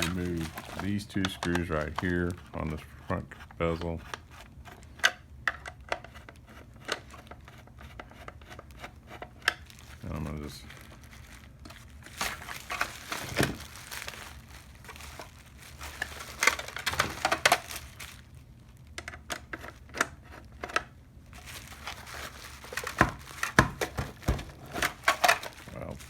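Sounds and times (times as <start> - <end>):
screwdriver clicks and plastic scrapes: 0.0 - 2.7.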